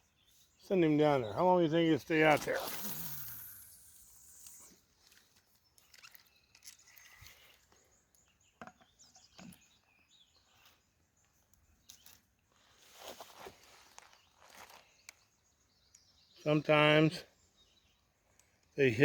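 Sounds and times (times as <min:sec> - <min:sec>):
faint bird chirps: 0:00.0 - 0:19.0.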